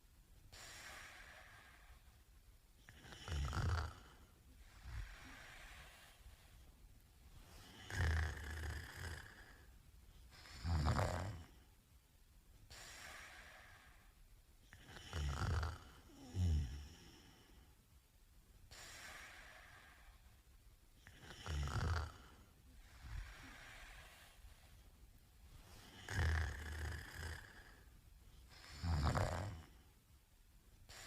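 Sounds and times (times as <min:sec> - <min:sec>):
faint breaths: 0:00.0 - 0:11.8, 0:12.6 - 0:17.9, 0:18.6 - 0:31.0
man snoring: 0:02.9 - 0:04.2, 0:07.6 - 0:09.7, 0:10.5 - 0:11.6, 0:14.7 - 0:17.5, 0:21.0 - 0:22.4, 0:25.8 - 0:27.8, 0:28.6 - 0:29.8.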